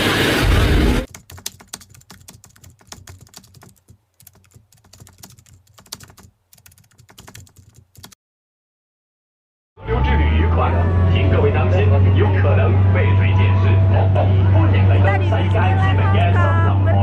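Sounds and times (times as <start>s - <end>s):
rapid faint clicking: 1.1s - 8.2s.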